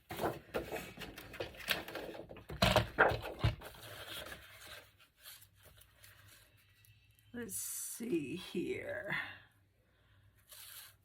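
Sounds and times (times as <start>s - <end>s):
paper rustling and scraping: 0.0s - 6.9s, 10.4s - 11.0s.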